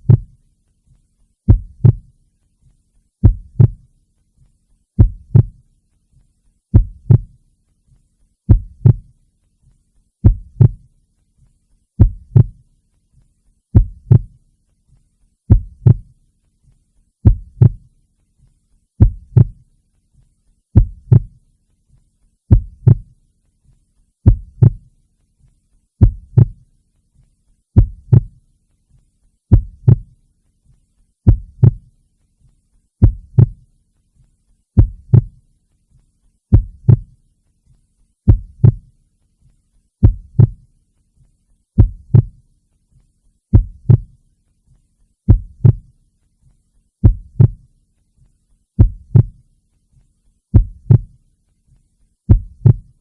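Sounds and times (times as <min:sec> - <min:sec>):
heartbeat thumps: 0:00.0 - 0:00.4, 0:01.5 - 0:02.2, 0:03.2 - 0:03.9, 0:05.0 - 0:05.7, 0:06.7 - 0:07.4, 0:08.5 - 0:09.2, 0:10.2 - 0:10.9, 0:12.0 - 0:12.6, 0:13.7 - 0:14.4, 0:15.5 - 0:16.2, 0:17.2 - 0:17.9, 0:19.0 - 0:19.7, 0:20.8 - 0:21.4, 0:22.5 - 0:23.2, 0:24.2 - 0:24.9, 0:26.0 - 0:26.7, 0:27.8 - 0:28.4, 0:29.5 - 0:30.2, 0:31.2 - 0:31.9, 0:33.0 - 0:33.7, 0:34.8 - 0:35.4, 0:36.5 - 0:37.2, 0:38.3 - 0:38.9, 0:40.0 - 0:40.7, 0:41.8 - 0:42.4, 0:43.5 - 0:44.2, 0:45.3 - 0:45.9, 0:47.0 - 0:47.7, 0:48.8 - 0:49.4, 0:50.5 - 0:51.2, 0:52.3 - 0:53.0.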